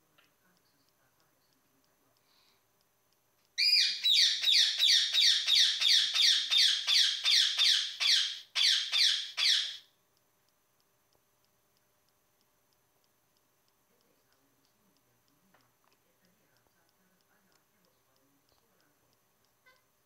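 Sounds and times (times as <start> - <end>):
parakeet calling loudly: 3.6 - 9.9.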